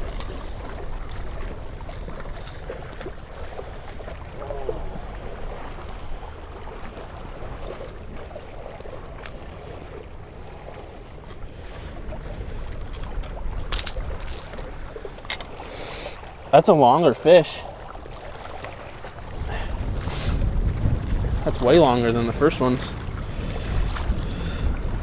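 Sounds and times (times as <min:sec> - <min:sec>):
wind buffeting microphone: 0:19.1 - 0:25.0.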